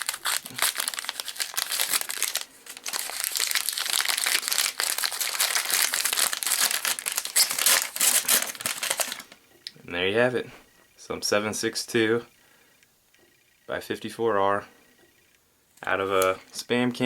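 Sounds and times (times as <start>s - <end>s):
wrapping paper crinkling: 0.0s - 9.4s.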